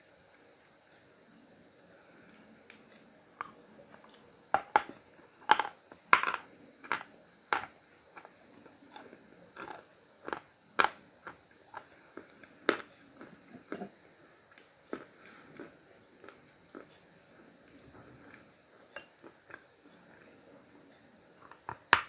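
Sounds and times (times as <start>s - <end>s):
chalk crunching while chewed: 2.7s - 13.9s.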